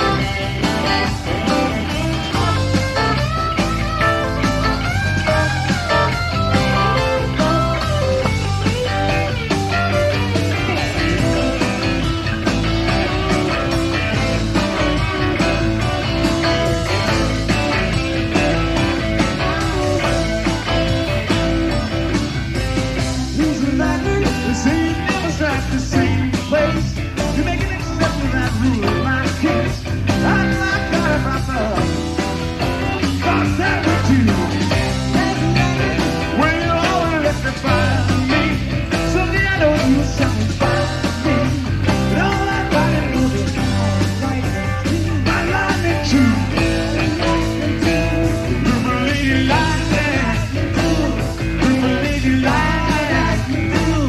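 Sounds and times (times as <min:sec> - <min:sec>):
rock song with singing: 0:00.0 - 0:54.0.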